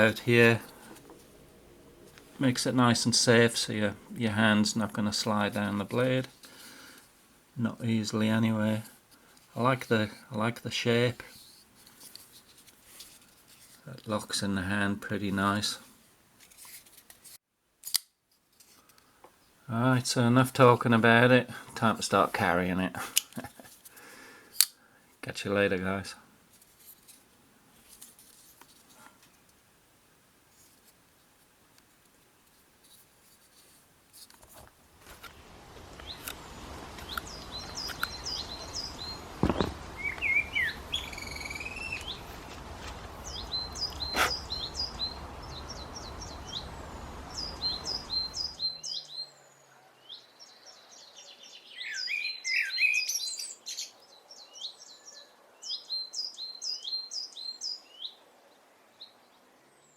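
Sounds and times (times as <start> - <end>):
outdoor background hiss: 0.0 - 59.9
small birds chirping: 35.8 - 58.2.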